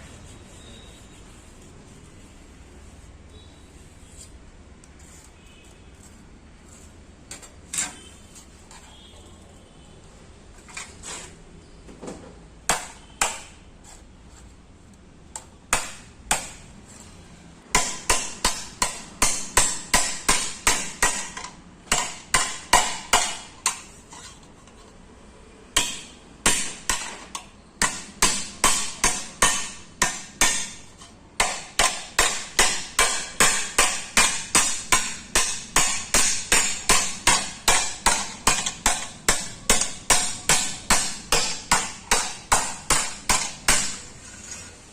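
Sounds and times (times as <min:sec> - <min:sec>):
hammer ringing on sheet metal: 0:17.7 - 0:23.9, 0:25.7 - 0:44.1.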